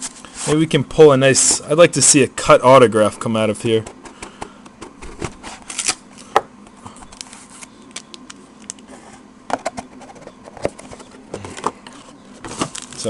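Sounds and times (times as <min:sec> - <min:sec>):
card box and packaging handled: 0:08.7 - 0:13.0.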